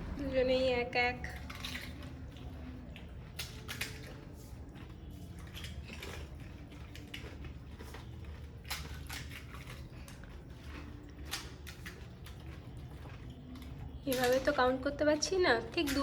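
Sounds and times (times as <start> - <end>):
wet chewing: 0.0 - 16.0
crunching crisp shells: 1.2 - 16.0.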